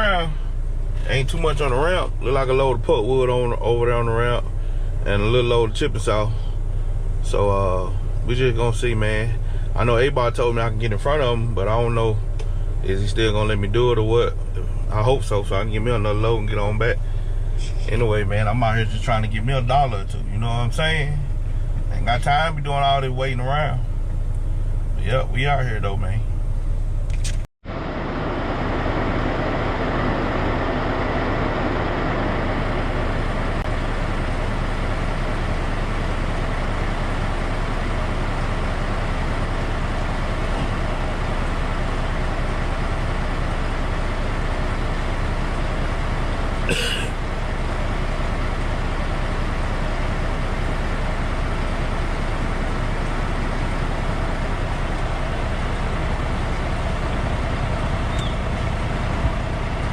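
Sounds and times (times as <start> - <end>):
diesel truck engine rumbling: 0.0 - 59.9.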